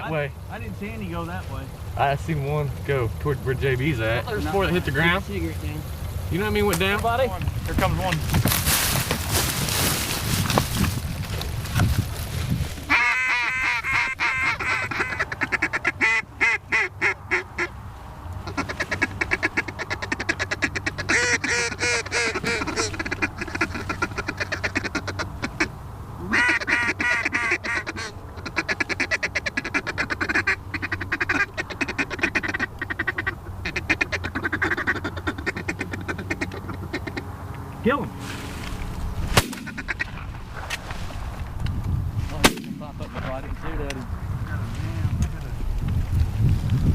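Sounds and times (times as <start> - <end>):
goose call honks and clucks: 12.8 - 17.8, 18.4 - 37.4, 39.4 - 40.4.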